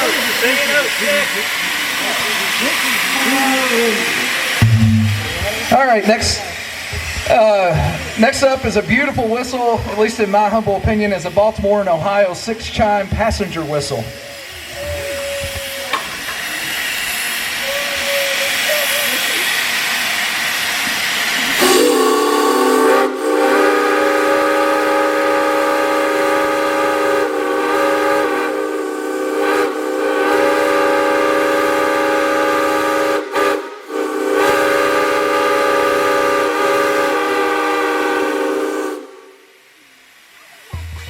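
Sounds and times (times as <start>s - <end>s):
steam hissing: 0.0s - 41.0s
steam whistle chord: 4.6s - 5.9s, 21.6s - 39.3s.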